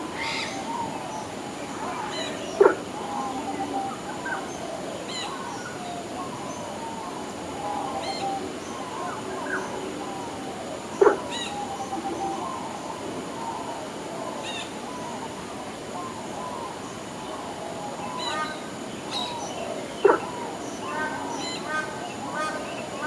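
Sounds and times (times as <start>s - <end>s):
birds warbling: 0.0s - 23.0s
birds chirping: 16.4s - 23.0s.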